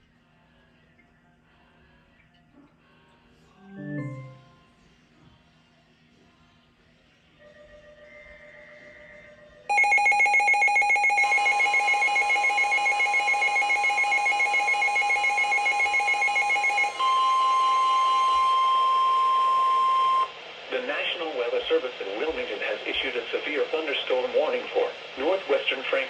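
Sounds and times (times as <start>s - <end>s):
rapidly pulsing alarm: 9.7s - 20.4s
faint tones: 11.4s - 26.0s.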